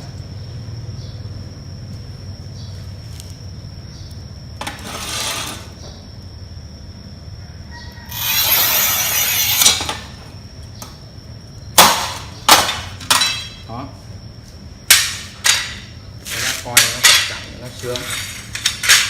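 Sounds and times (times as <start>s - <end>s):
tile cutter scratching tile: 4.7s - 5.7s, 8.1s - 9.8s.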